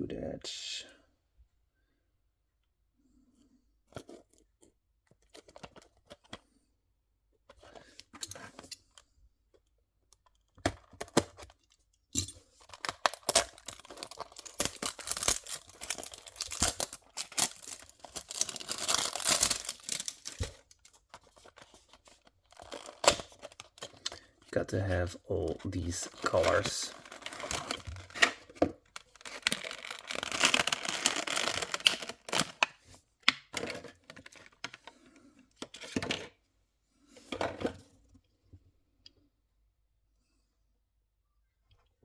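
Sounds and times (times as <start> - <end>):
packaging rustling and scraping: 12.5 - 24.3, 25.6 - 32.7, 33.6 - 34.9.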